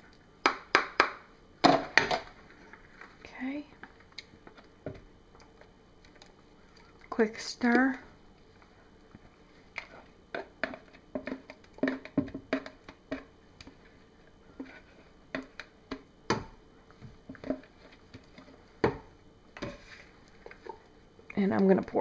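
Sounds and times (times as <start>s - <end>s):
utensil scraping and knocking pot: 9.8s - 13.9s, 14.5s - 20.8s.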